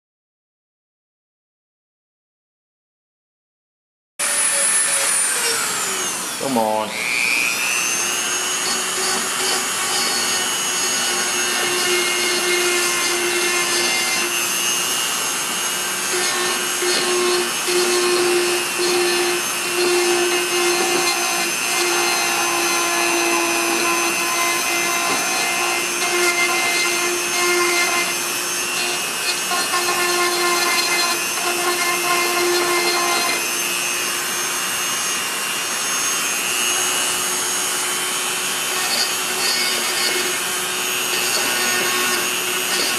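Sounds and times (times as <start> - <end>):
power tool motor whine: 4.2 - 42.9
tool scraping plastic: 15.4 - 33.6, 38.7 - 42.9.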